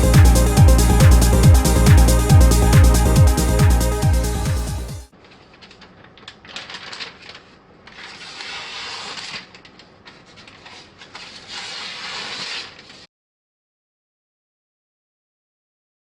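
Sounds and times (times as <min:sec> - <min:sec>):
knife blade scraping: 0:08.0 - 0:13.1
hissing knife strokes: 0:10.8 - 0:13.1.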